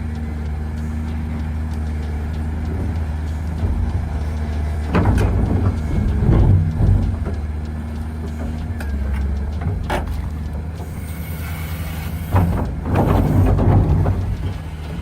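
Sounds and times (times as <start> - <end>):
diesel machinery engine drone: 0.0 - 15.0
clattering and knocks: 1.7 - 15.0.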